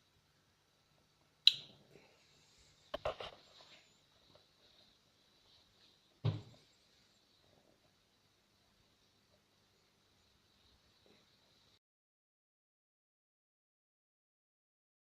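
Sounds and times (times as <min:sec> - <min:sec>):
faint high-pitched whine: 0:00.0 - 0:11.8
dull thump: 0:06.2 - 0:06.6.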